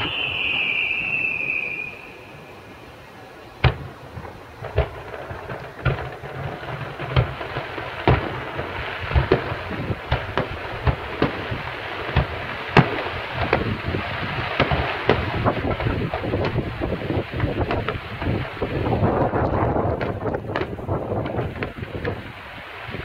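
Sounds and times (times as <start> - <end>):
whistling firework: 0.0 - 23.0
firework shells bursting: 3.6 - 22.4
wind on microphone: 8.6 - 23.0.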